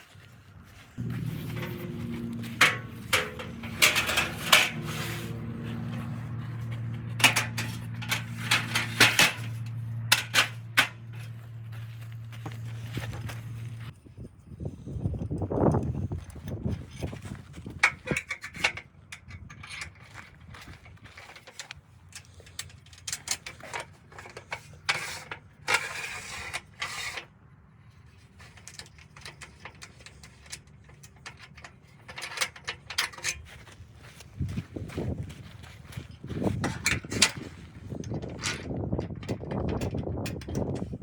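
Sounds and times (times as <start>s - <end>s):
metal clicks and clanks: 1.0s - 11.4s, 15.8s - 27.3s, 28.4s - 33.8s, 35.9s - 41.0s.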